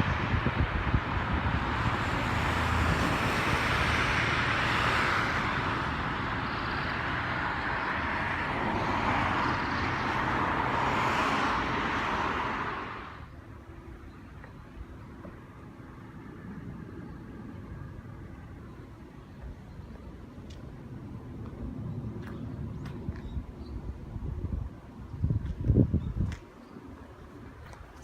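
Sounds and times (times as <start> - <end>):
cars passing close by: 0.0 - 14.0.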